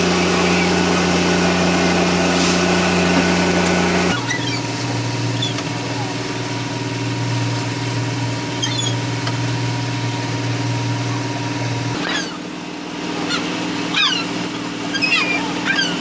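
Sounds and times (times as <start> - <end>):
engine humming: 0.0 - 16.0
short high bird calls: 8.6 - 9.0, 12.0 - 12.5, 13.2 - 16.0.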